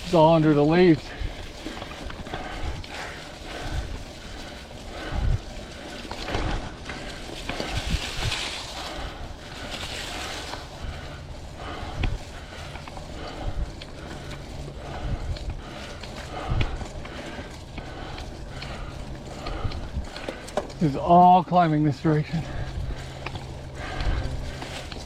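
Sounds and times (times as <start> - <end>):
bike tyres rustling over leaves: 0.0 - 25.0
bike thumping over bumps: 6.0 - 9.6.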